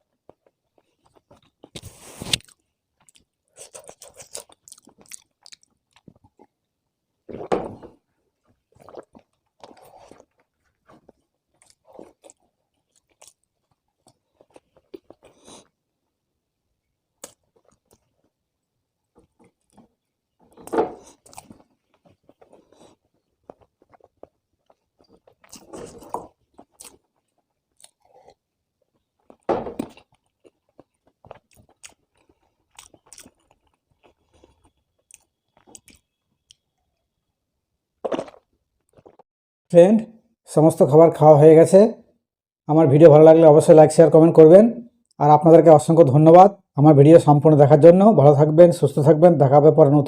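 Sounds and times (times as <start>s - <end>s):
person chewing: 0.1s - 6.7s, 7.3s - 15.8s, 17.2s - 18.4s, 19.2s - 37.2s, 38.0s - 39.2s.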